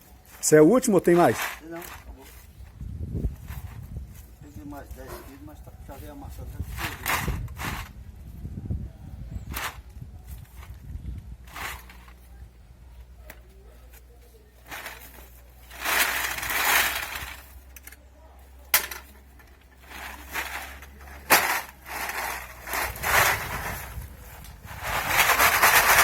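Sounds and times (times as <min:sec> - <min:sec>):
crushed aluminium cans crunching: 0:18.7 - 0:23.8, 0:24.9 - 0:26.0.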